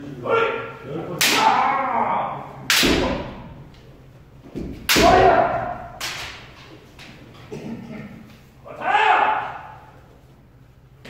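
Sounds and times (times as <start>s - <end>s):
person shouting: 4.9s - 5.9s, 8.7s - 9.9s.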